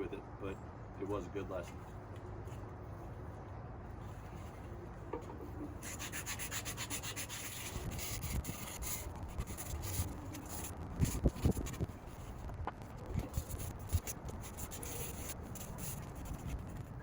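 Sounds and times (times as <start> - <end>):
sandpaper rasping on wood: 5.8 - 11.9.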